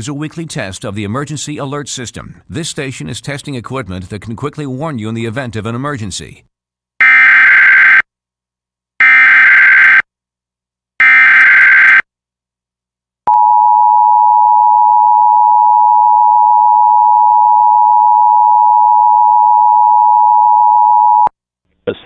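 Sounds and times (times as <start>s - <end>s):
steady attention tone: 13.3s - 21.3s.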